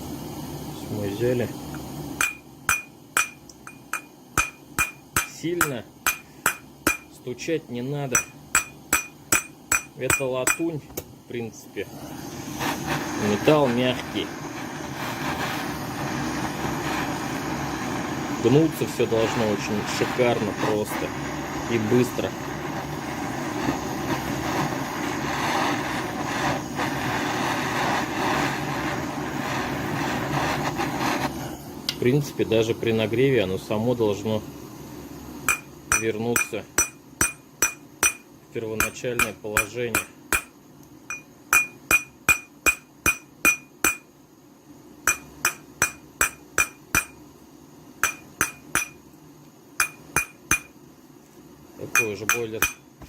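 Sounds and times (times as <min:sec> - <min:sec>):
heating torch roaring: 0:00.0 - 0:44.0, 0:44.6 - 0:49.0
small hammer tapping on brass: 0:02.2 - 0:07.1, 0:08.2 - 0:10.7, 0:35.5 - 0:38.2, 0:38.8 - 0:40.5, 0:41.1 - 0:44.1, 0:45.1 - 0:47.2, 0:48.0 - 0:49.0, 0:49.8 - 0:50.8, 0:52.0 - 0:52.8.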